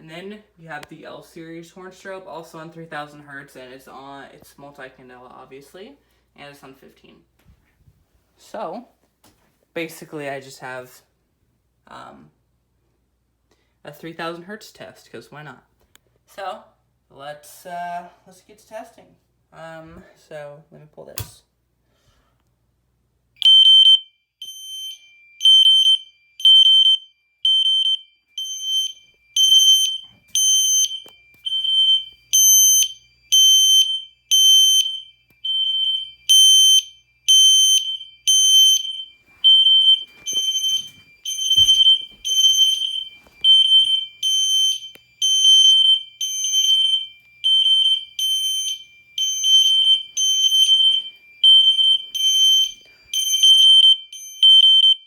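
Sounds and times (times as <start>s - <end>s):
fire alarm horn pulses: 23.4s - 55.0s.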